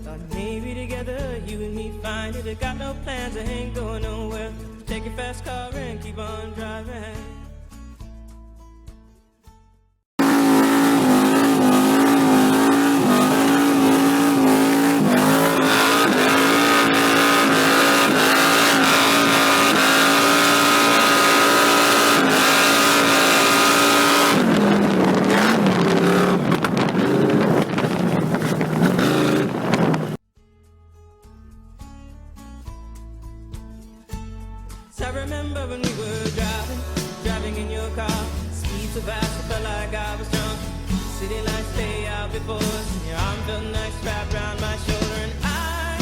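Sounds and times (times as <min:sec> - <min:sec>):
tyres squealing: 0:10.2 - 0:30.0
car engine at high revs: 0:10.2 - 0:30.2.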